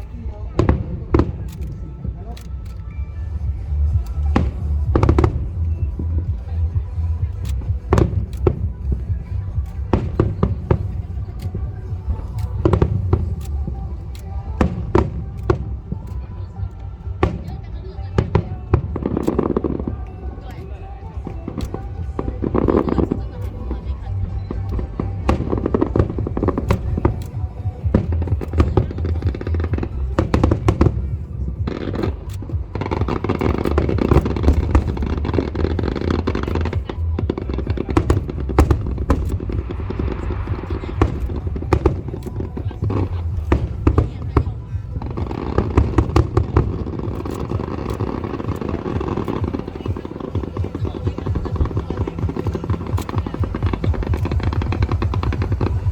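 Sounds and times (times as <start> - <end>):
low rumble: 0.0 - 55.9
music playing: 0.0 - 55.9
fireworks bangs: 21.2 - 55.9.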